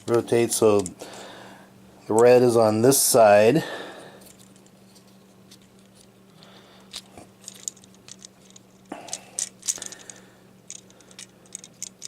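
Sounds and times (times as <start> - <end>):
plastic parts clicking and scraping: 4.2 - 12.0.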